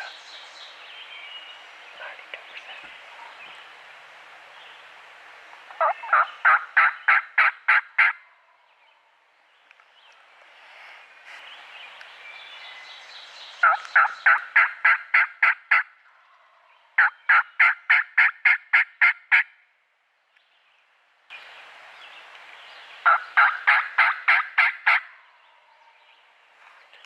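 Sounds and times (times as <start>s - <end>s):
steady background hiss: 0.0s - 17.0s, 19.6s - 27.0s
turkey yelping: 5.8s - 8.2s, 17.0s - 19.5s, 23.1s - 25.0s.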